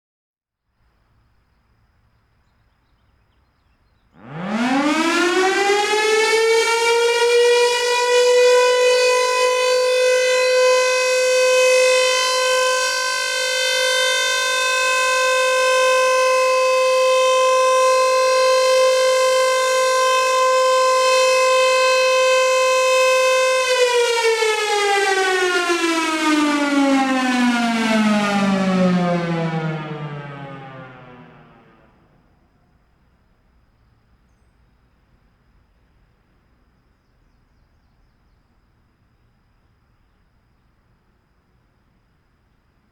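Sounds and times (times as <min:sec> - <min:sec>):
warning siren steady tone: 0:04.2 - 0:32.4.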